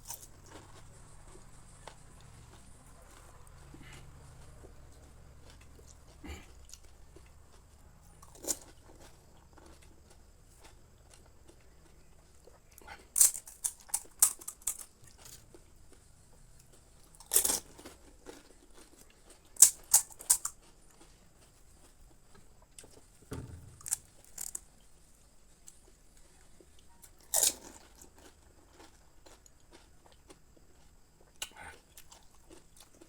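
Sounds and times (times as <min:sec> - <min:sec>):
crisp shells crunching: 0:13.2 - 0:15.4, 0:23.7 - 0:24.6.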